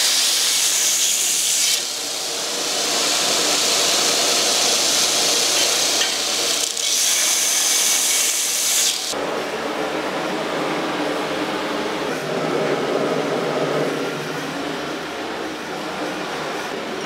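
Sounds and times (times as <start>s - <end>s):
power tool grinding steel: 0.0s - 9.2s.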